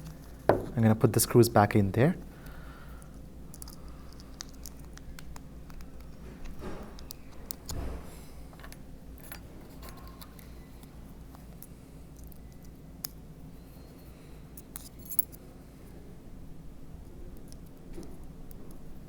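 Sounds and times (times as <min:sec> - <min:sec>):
soft knocks: 0:00.5 - 0:00.8.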